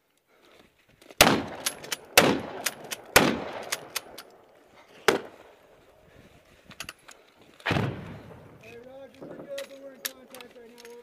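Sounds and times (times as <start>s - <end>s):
loud gunshots with echo: 1.2s - 4.2s.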